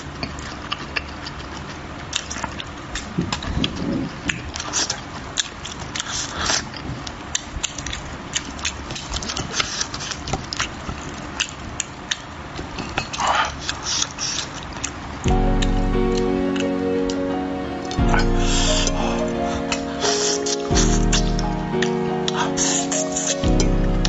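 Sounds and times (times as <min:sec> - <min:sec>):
wet chewing and lip smacks: 0:00.1 - 0:15.1
music: 0:15.3 - 0:24.0.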